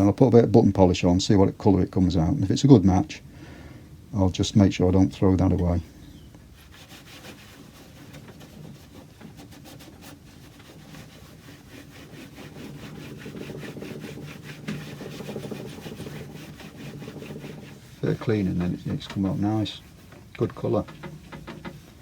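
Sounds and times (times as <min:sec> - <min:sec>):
cloth rubbing on wood: 0:06.4 - 0:22.0.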